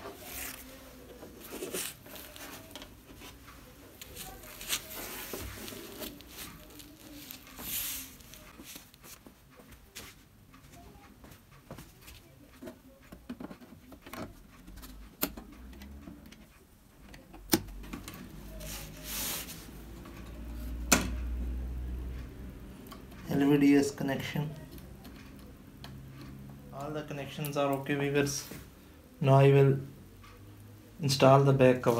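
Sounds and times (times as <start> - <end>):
small taps and ticks: 8.3 - 18.4.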